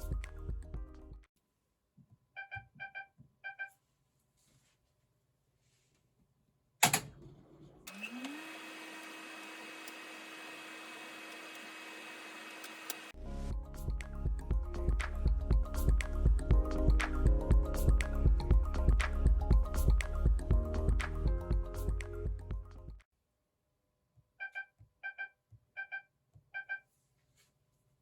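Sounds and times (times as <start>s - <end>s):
loud click: 6.8s - 7.1s
washing machine motor humming: 7.9s - 13.1s
control panel beeps: 24.4s - 26.0s, 26.6s - 26.8s.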